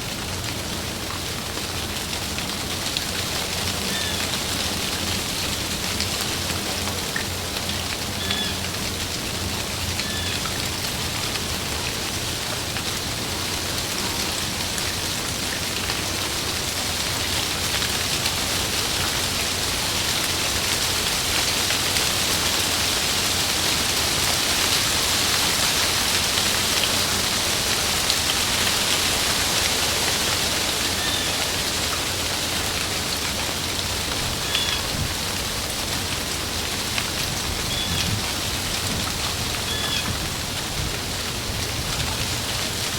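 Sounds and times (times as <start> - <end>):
heavy rain on leaves: 0.0 - 42.9.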